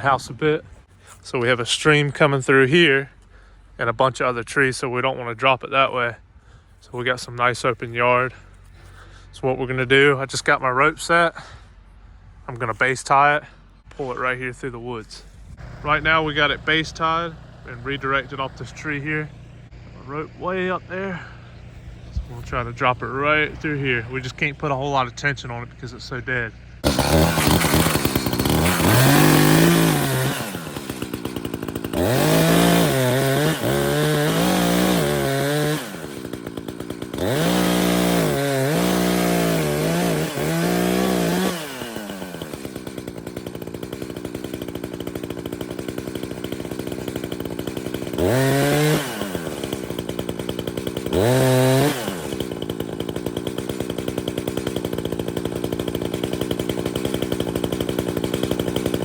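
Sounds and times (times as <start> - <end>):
chainsaw cutting wood: 15.1 - 25.8, 26.6 - 59.0.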